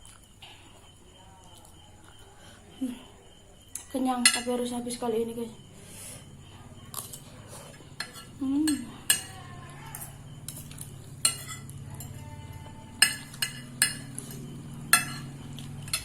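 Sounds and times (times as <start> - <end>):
cutlery clinking on a plate: 6.9 - 16.0.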